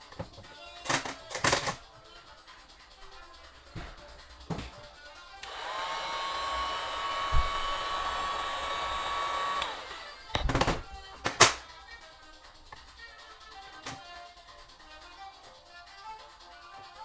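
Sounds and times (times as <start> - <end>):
electric lift motor whining: 5.4 - 10.4.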